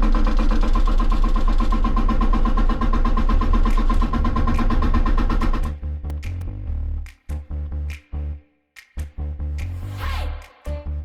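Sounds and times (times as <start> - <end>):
hydraulic rock breaker hammering: 0.0 - 5.7
excavator engine under load: 0.0 - 5.8.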